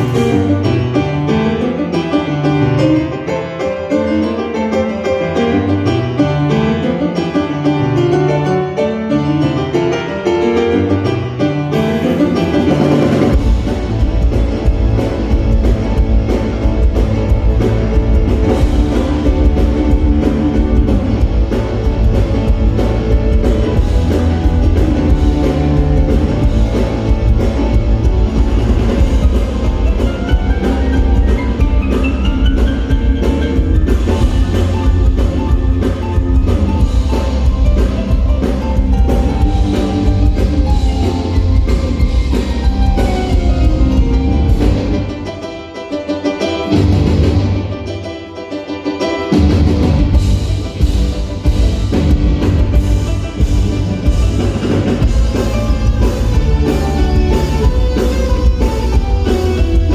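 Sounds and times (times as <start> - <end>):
drums: 0.0 - 59.9
piano melody: 0.0 - 59.9
low bass: 12.9 - 45.2, 49.4 - 59.9.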